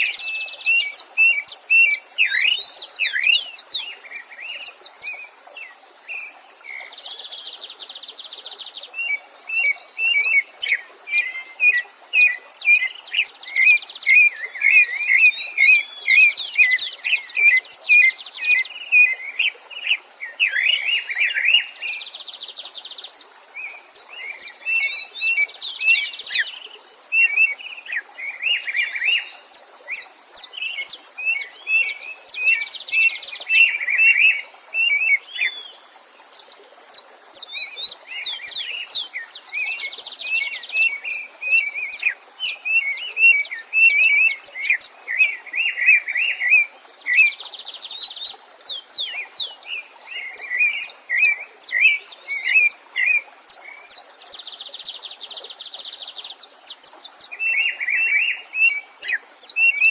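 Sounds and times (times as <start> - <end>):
stream rushing: 0.0 - 6.8
songbirds singing and chirping: 0.0 - 59.9.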